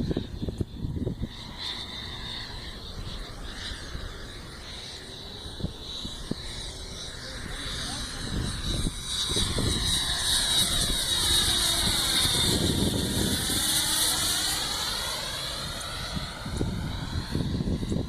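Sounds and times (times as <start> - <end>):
model plane ducted fan whine: 0.0 - 18.0.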